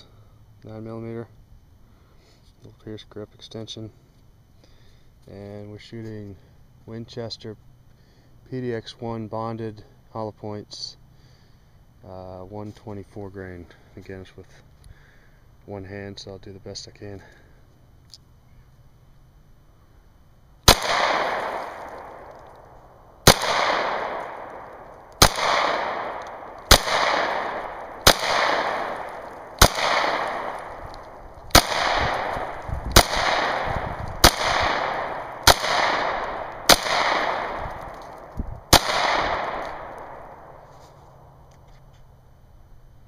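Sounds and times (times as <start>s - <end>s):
pistol shots with echo: 20.6s - 22.4s, 23.2s - 40.6s.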